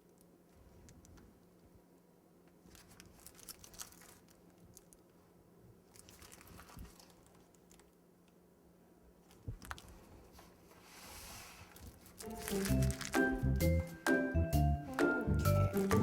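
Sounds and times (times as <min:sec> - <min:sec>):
plastic piping bag crinkling: 0:02.6 - 0:05.2, 0:05.8 - 0:08.0, 0:09.2 - 0:10.6, 0:11.6 - 0:13.9, 0:14.9 - 0:16.0.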